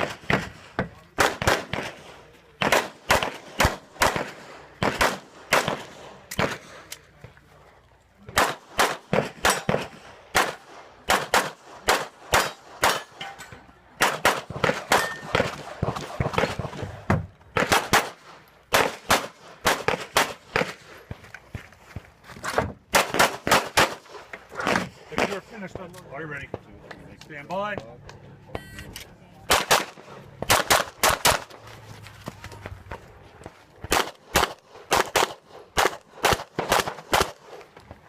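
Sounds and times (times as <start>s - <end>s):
pistol shots cracking: 0.0s - 6.9s, 8.4s - 13.2s, 14.0s - 20.9s, 22.9s - 25.8s, 29.5s - 31.6s, 33.9s - 37.7s.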